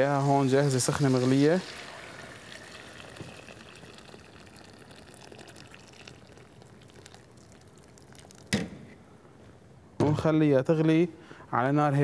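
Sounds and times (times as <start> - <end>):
water pouring into pot: 0.0 - 8.5.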